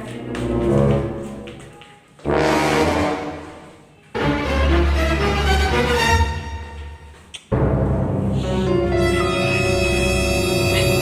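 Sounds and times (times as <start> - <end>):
orchestral music with timpani: 0.2 - 1.5, 2.2 - 11.0
different music piece: 2.2 - 11.0.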